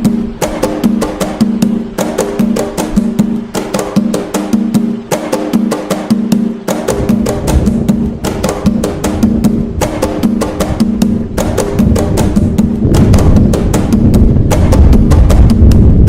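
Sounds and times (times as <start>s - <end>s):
hand drums playing fast rhythm: 0.0s - 16.0s
heavy bass drum strokes: 0.0s - 16.0s.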